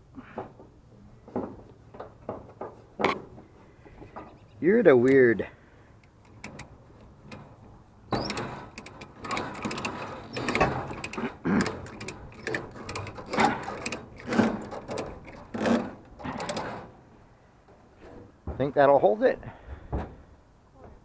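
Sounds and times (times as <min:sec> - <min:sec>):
ratchet strap clicking: 0:08.1 - 0:15.8.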